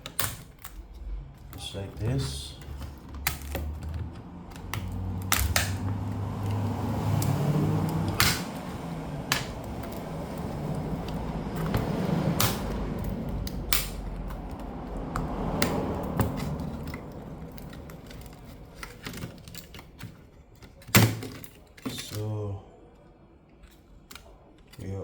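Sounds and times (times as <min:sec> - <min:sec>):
rubbing and handling noise: 0:00.0 - 0:22.2
plastic clicks and snaps: 0:02.6 - 0:08.6, 0:11.0 - 0:22.2.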